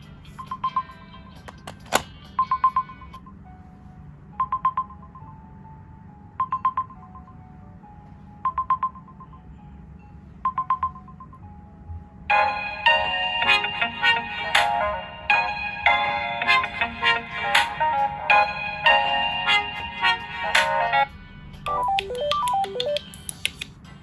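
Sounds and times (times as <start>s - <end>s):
ringtone melody: 0.0s - 3.4s, 4.3s - 23.2s
sharp click: 1.5s - 2.1s
phone timer alarm beeping: 2.4s - 3.2s, 4.4s - 5.3s, 6.4s - 7.4s, 8.4s - 9.4s, 10.4s - 11.4s.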